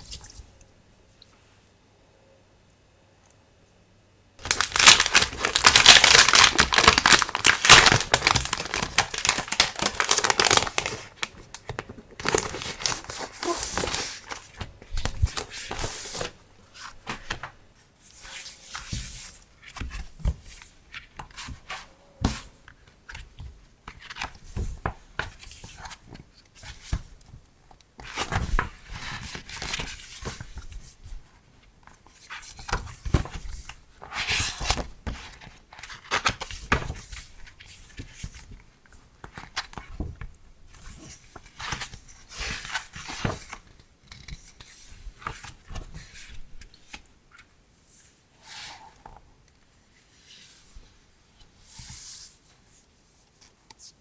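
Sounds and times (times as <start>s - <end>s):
packaging crinkling and tearing: 4.4s - 16.3s
packaging rustling: 4.4s - 17.4s.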